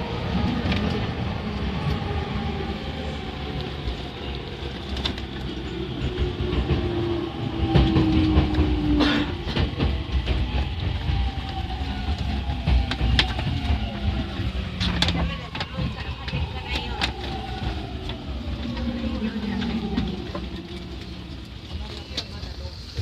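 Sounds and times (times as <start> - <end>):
train wheels rumbling on rail: 0.0 - 23.0
clacks over rail joints: 7.6 - 23.0.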